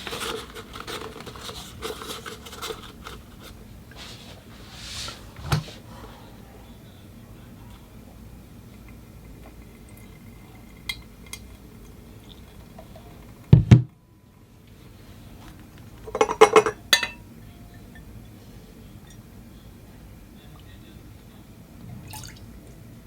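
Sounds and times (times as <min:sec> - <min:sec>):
glassware and dishes clinking: 0:16.1 - 0:18.1.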